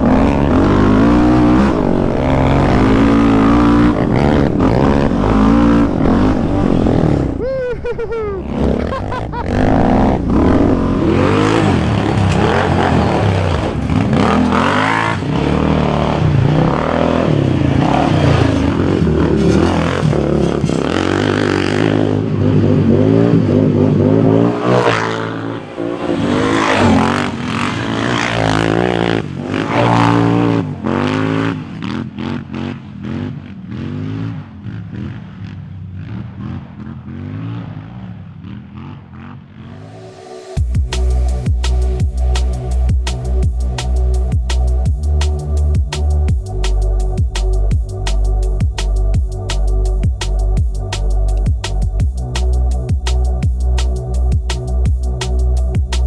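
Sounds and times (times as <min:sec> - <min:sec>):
quad engine revving: 0:00.0 - 0:40.0, 0:40.6 - 0:56.0
chassis clatter and scraping: 0:19.1 - 0:21.8.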